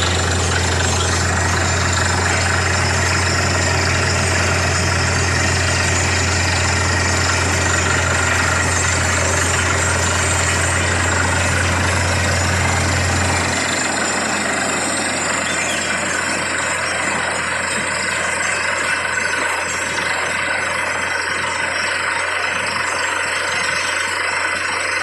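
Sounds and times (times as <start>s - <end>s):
drilling rig running: 0.0s - 25.0s.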